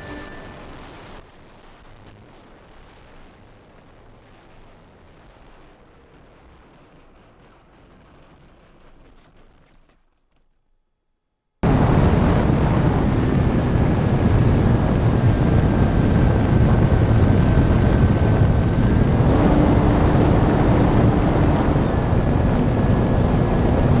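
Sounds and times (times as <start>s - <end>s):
faint motor whine: 0.0s - 7.6s, 11.6s - 24.0s
wind buffeting microphone: 11.6s - 24.0s.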